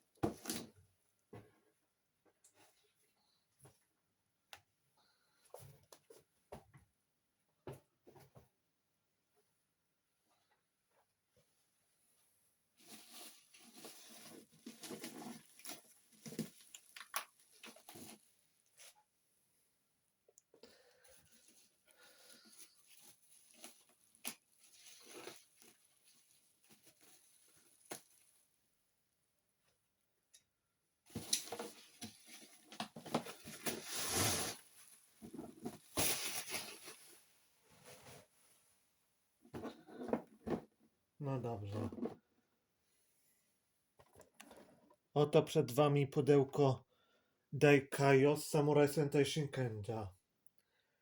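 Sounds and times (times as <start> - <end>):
packaging rustling and scraping: 12.8 - 19.0, 21.3 - 28.4, 31.1 - 38.4.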